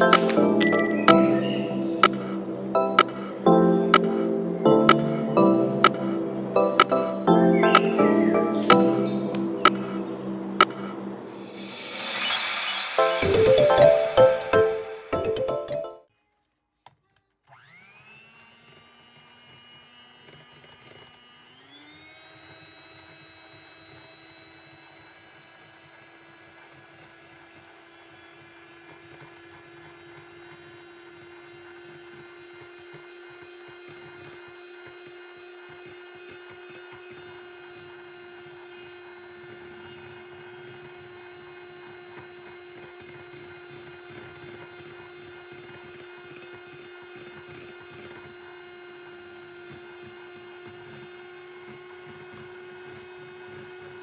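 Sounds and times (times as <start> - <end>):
electric hand mixer whine: 8.5 - 13.1, 25.8 - 54.0.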